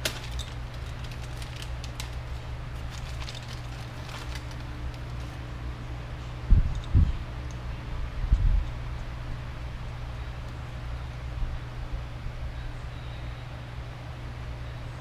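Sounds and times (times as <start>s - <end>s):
small parts clicking and rustling: 0.0s - 5.4s, 6.7s - 7.6s
steady low hum: 0.0s - 15.0s.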